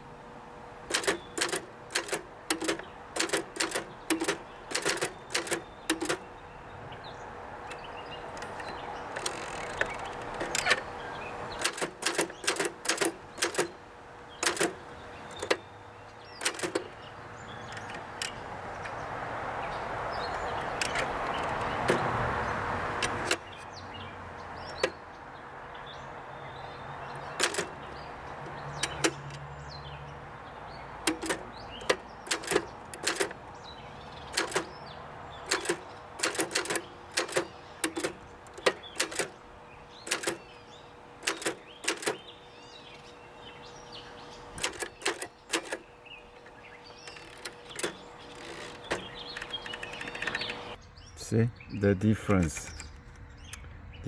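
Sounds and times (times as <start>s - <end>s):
typewriter keys clicking: 0.8s - 6.3s, 7.7s - 10.9s, 11.5s - 13.8s, 14.4s - 15.6s, 16.4s - 17.1s, 17.7s - 19.0s, 20.2s - 22.3s, 22.9s - 23.6s, 27.1s - 29.5s, 31.0s - 33.4s, 34.1s - 39.4s, 40.0s - 40.5s, 41.2s - 42.3s, 44.6s - 45.9s, 47.1s - 50.8s.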